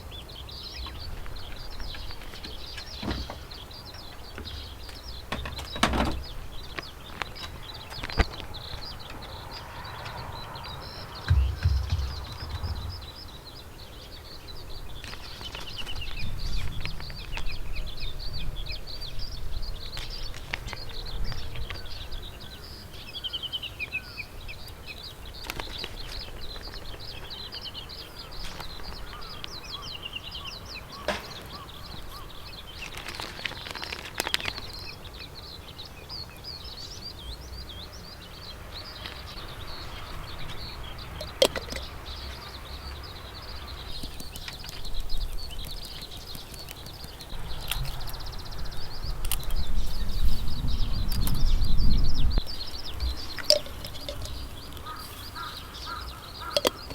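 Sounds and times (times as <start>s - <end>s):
small birds chirping: 0.0s - 56.9s
low rumble: 10.9s - 13.4s.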